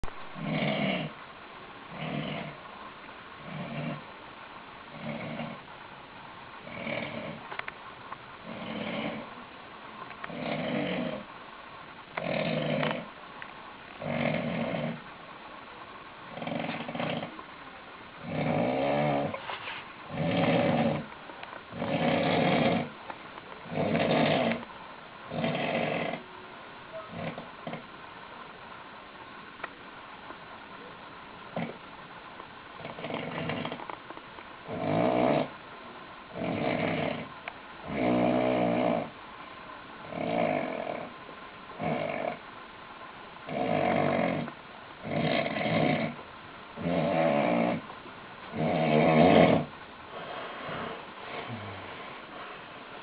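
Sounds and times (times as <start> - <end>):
man snoring heavily: 21.8 - 22.9, 43.5 - 44.5, 45.1 - 46.2, 48.6 - 49.7, 51.5 - 51.9.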